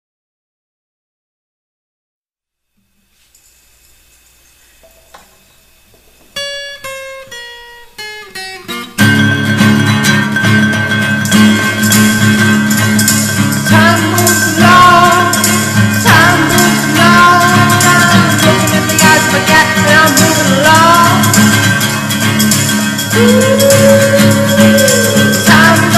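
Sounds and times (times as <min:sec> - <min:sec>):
plucked guitar notes: 0:04.8 - 0:25.9
background music: 0:09.0 - 0:25.9.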